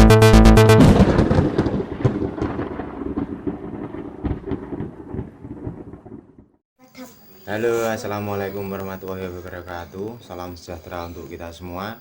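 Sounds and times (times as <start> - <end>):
electronic intro music: 0.0 - 1.0
thunderclap-like crash: 0.7 - 6.6.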